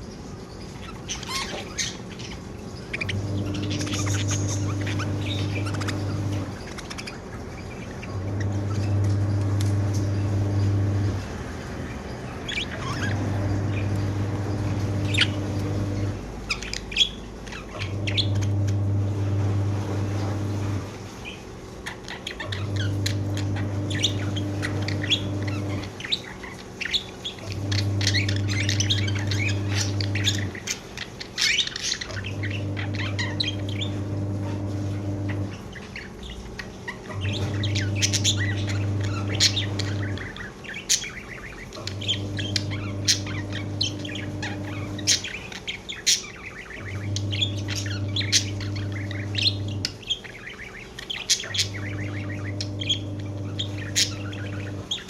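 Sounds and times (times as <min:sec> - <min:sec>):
budgerigars chirping: 0:00.0 - 0:55.0
low hum: 0:12.9 - 0:16.4.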